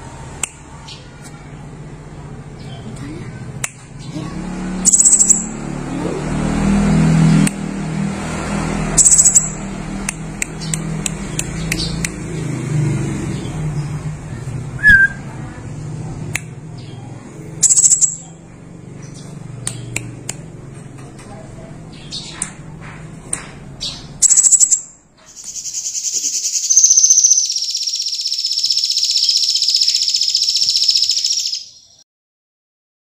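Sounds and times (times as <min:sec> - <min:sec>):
bird chip notes: 0:04.8 - 0:05.6, 0:09.0 - 0:09.7, 0:17.6 - 0:18.3, 0:23.8 - 0:32.0
bird high trills: 0:04.8 - 0:05.6, 0:09.0 - 0:09.6, 0:17.6 - 0:18.2, 0:24.2 - 0:32.0.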